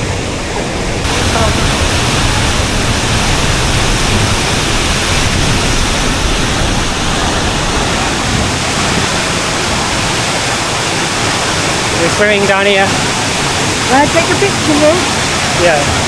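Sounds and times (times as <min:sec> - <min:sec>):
deep rumble: 0:00.0 - 0:11.0
waterfall rushing: 0:00.0 - 0:16.0.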